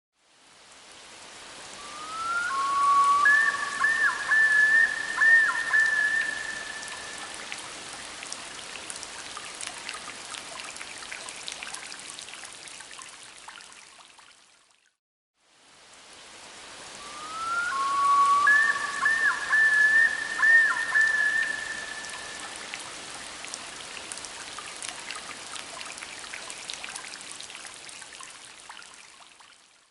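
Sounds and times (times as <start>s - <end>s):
steady hiss: 0.3s - 9.1s, 15.5s - 24.4s
bird whistles and warbles: 1.8s - 7.0s, 17.0s - 22.4s.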